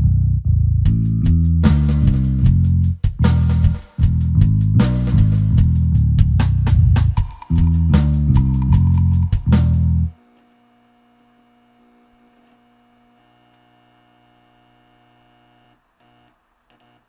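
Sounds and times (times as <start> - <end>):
guitar music: 0.0 - 10.1.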